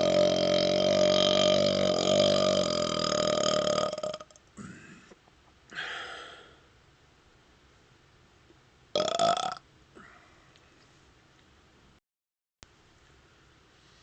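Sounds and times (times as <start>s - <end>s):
man burping: 0.0s - 6.0s, 9.0s - 10.1s.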